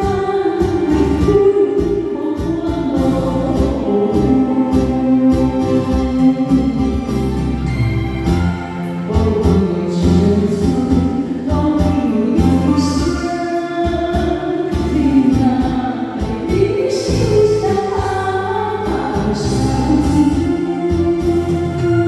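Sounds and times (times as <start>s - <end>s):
electronic organ accompaniment: 0.0s - 22.0s
person singing: 0.0s - 22.0s.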